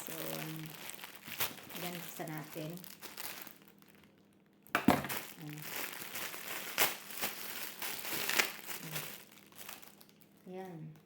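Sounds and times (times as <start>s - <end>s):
plastic packaging crinkling: 0.0s - 10.6s.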